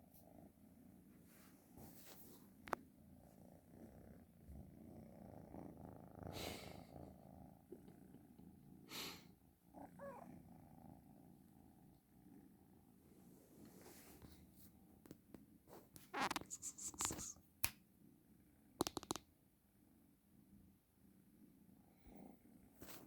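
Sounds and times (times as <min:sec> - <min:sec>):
kitten purring: 0:00.0 - 0:17.4, 0:18.7 - 0:19.3
brief rustles: 0:16.0 - 0:17.4
sharp click: 0:18.8 - 0:19.2.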